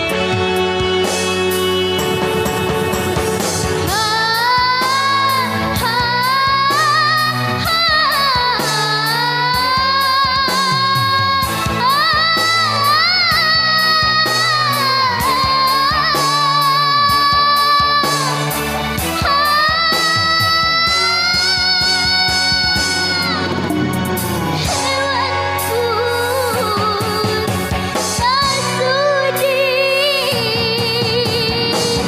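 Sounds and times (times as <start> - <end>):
band accompaniment with steady beat: 0.0 - 32.0
girl singing in high voice: 3.9 - 18.4, 19.2 - 23.5, 24.6 - 27.5, 28.2 - 32.0.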